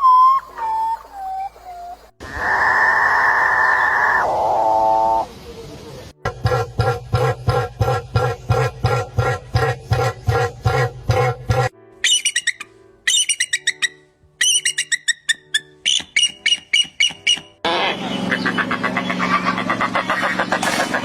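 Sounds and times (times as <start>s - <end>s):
low pulsing bird call: 0.0s - 5.4s
harsh chattering bird squawk: 7.9s - 21.0s.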